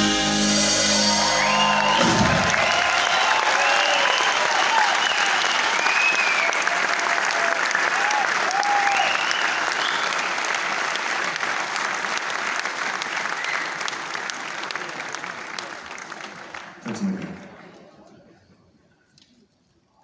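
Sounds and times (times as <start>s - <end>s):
audience applauding: 0.0s - 17.7s
cheers and whistles: 0.4s - 10.6s, 13.1s - 14.0s.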